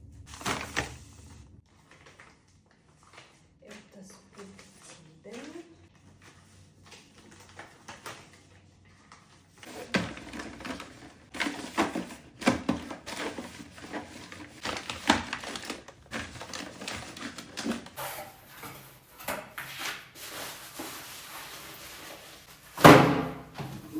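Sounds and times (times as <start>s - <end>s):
rustling: 12.8s - 23.9s.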